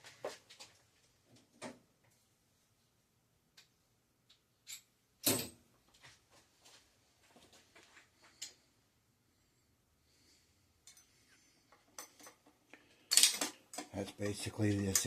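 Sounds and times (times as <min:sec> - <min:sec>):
clicks and knocks of bicycle parts: 0:11.7 - 0:15.0.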